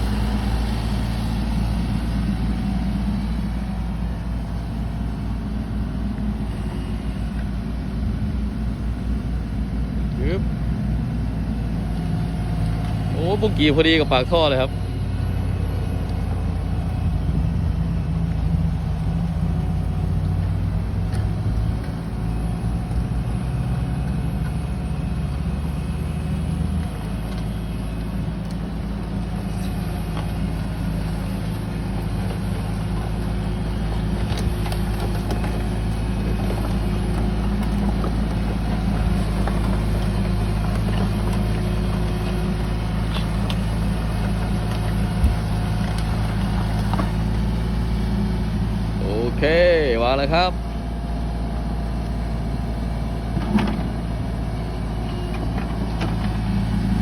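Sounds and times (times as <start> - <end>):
diesel engine running: 0.0 - 57.0
hydraulics working: 0.0 - 57.0.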